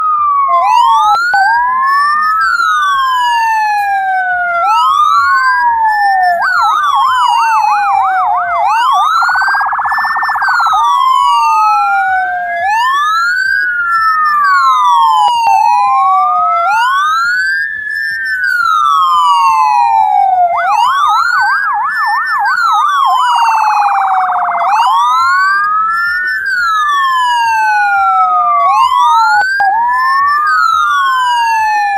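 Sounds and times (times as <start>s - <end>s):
ambulance siren wailing and yelping: 0.0s - 31.9s.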